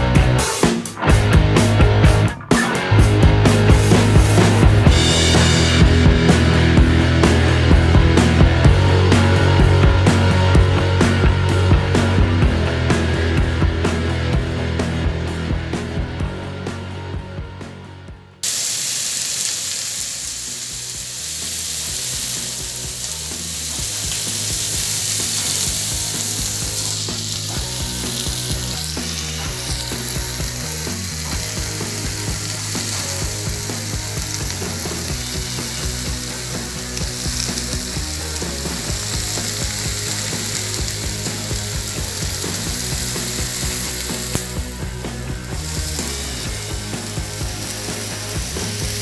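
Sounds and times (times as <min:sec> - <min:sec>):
dense steady crackling: 0:18.4 - 0:49.0.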